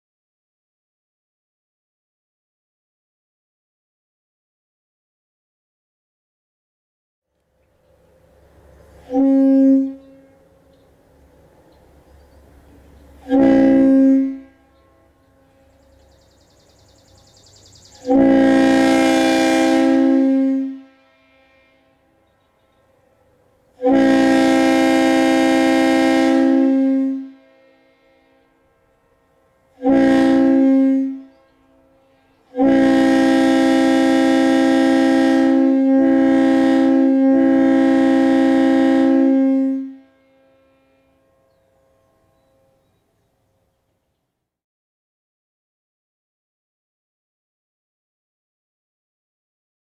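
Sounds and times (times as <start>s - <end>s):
train air horn blasts: 9.0s - 10.7s, 12.5s - 16.3s, 18.0s - 43.0s.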